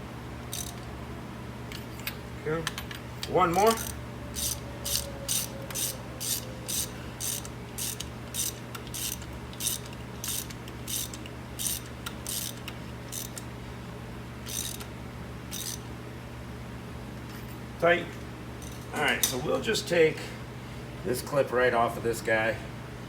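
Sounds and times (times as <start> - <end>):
socket ratchet clicking: 0.5 - 0.9, 3.2 - 13.5, 14.4 - 14.9, 15.5 - 15.8.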